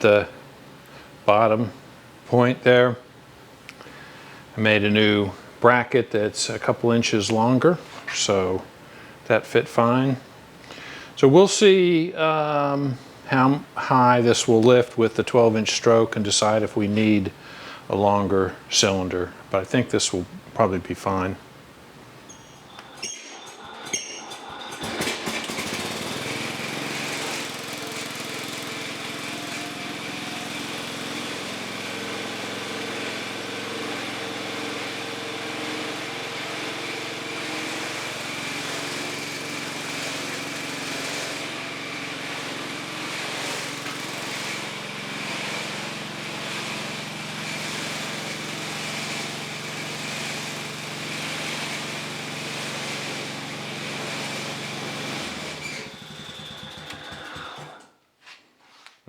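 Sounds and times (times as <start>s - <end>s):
air compressor motor hum: 22.3s - 57.9s.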